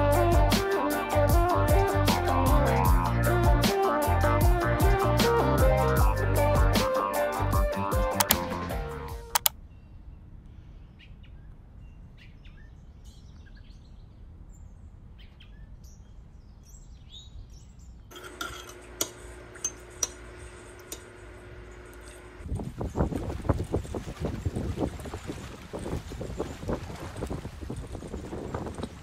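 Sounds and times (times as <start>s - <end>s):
small birds chirping: 9.6s - 18.1s
steady hum: 18.1s - 22.5s.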